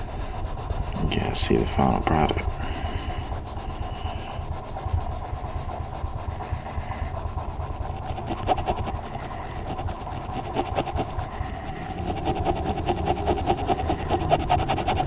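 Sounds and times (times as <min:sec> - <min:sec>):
pencil rubbing on paper: 0:00.0 - 0:15.0
steady low rumble: 0:09.0 - 0:15.0.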